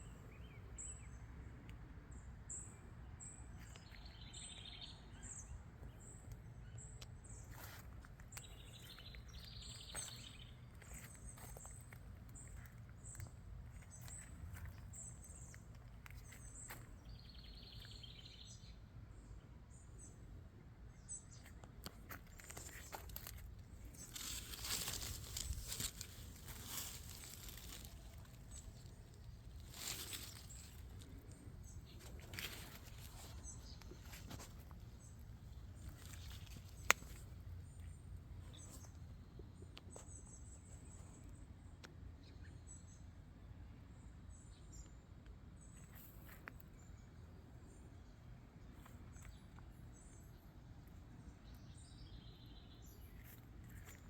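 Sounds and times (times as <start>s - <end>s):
small birds chirping: 0.0s - 43.1s, 43.9s - 54.0s
rustling noise: 22.2s - 37.3s.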